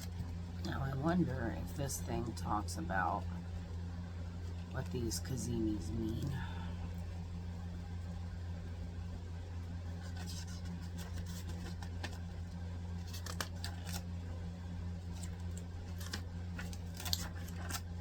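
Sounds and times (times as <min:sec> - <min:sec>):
steady low hum: 0:00.0 - 0:18.0
book pages rustling: 0:09.8 - 0:14.1, 0:15.0 - 0:18.0.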